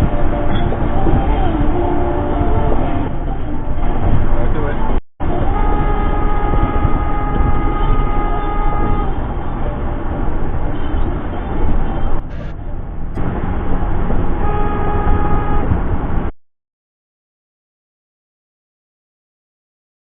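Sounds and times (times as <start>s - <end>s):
low road rumble: 0.0s - 16.4s
vehicle horn blast: 5.2s - 12.6s, 14.4s - 15.8s.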